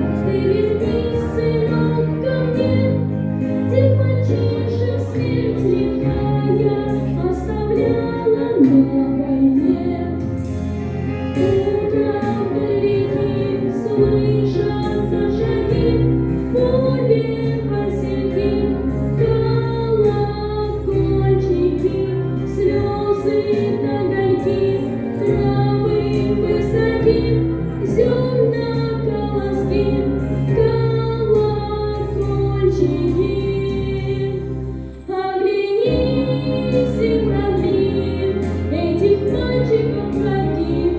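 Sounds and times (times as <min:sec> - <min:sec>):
instrumental accompaniment with bass: 0:00.0 - 0:35.2, 0:35.9 - 0:40.9
high voice singing: 0:05.8 - 0:10.4.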